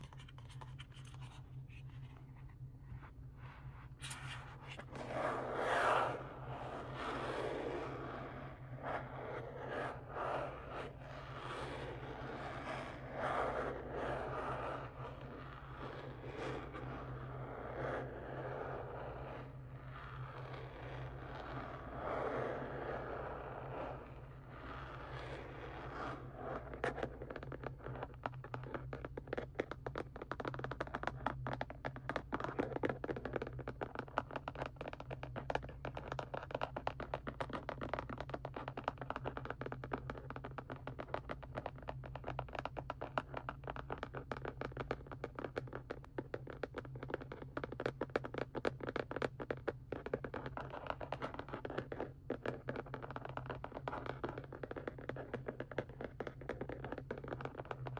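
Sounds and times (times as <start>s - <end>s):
soft rubbing: 0.0s - 17.2s
steady low hum: 0.0s - 27.2s
fingers tapping plastic packaging: 27.2s - 57.9s.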